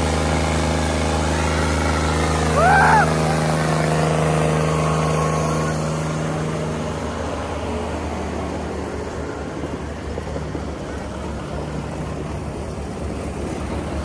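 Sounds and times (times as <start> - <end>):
tractor engines humming: 0.0 - 14.0.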